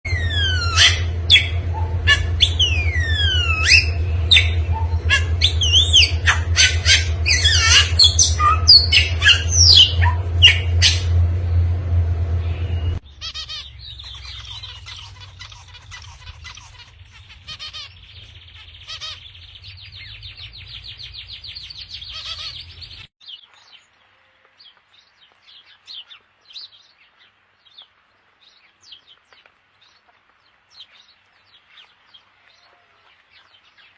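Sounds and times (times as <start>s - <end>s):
low hum: 0.1s - 23.1s
birds trilling: 0.1s - 23.8s
birds squawking and chirping: 0.1s - 23.9s.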